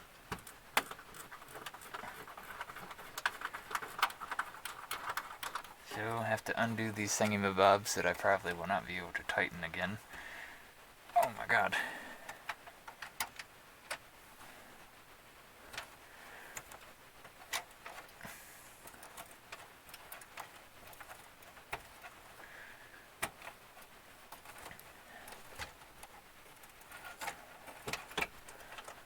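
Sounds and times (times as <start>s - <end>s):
light clicks and taps on metal: 23.2s - 29.0s.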